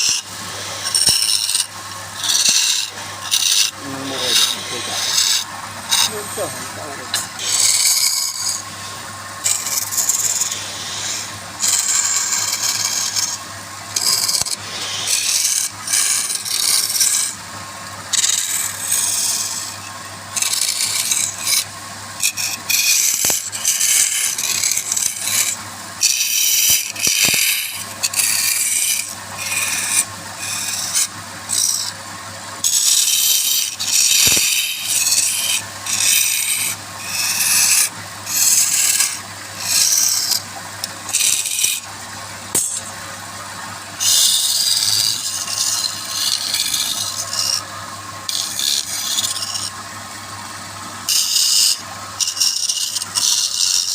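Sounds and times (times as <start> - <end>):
lathe humming: 0.0 - 53.9
tool scraping spinning wood: 0.0 - 53.9.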